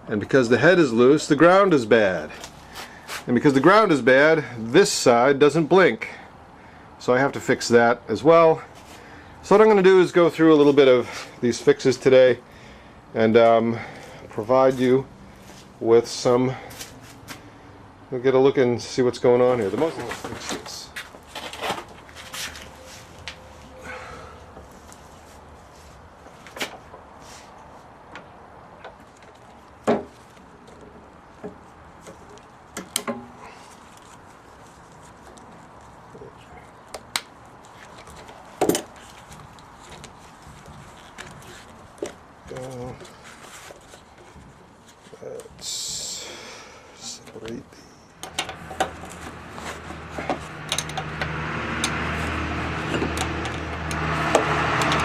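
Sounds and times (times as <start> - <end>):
hand tools clicking and knocking: 36.8 - 44.4, 48.2 - 52.2, 52.8 - 55.0
hiss: 45.6 - 46.6.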